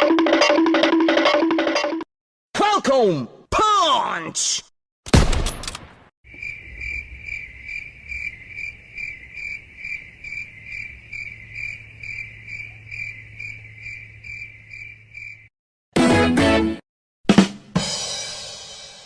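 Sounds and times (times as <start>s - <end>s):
crickets chirping: 6.3s - 15.5s.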